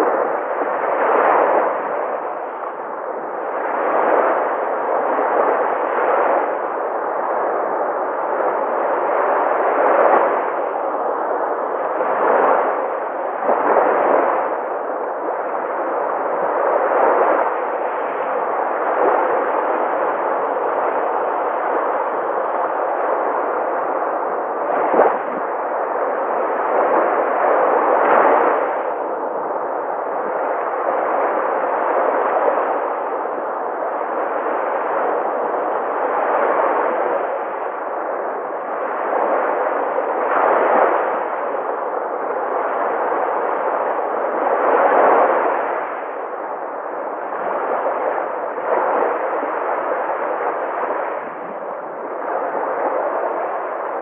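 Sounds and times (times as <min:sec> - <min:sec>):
sea waves breaking on shore: 0:07.6 - 0:33.4, 0:34.0 - 0:54.0.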